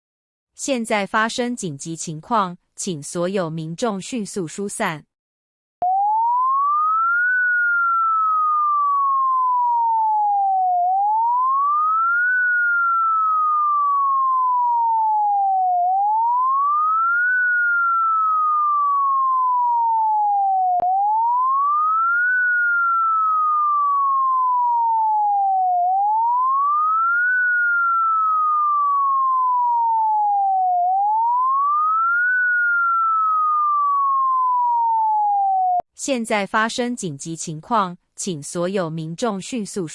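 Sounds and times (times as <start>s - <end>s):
rising and falling siren tone: 5.8s - 35.8s.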